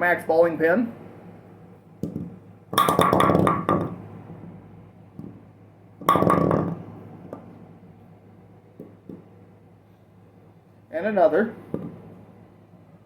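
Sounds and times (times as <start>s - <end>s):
wooden bowling pin clattering: 2.0s - 4.0s, 6.0s - 6.8s.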